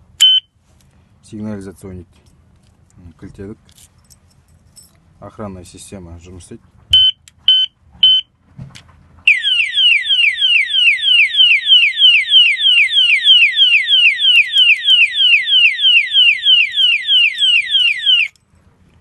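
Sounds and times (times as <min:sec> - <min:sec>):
padlock alarm siren whooping: 0:09.3 - 0:18.4.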